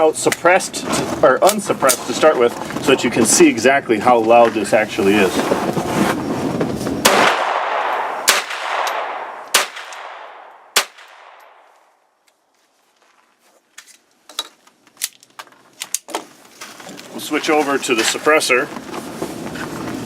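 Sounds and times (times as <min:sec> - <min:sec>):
handgun shots: 0:07.0 - 0:11.6.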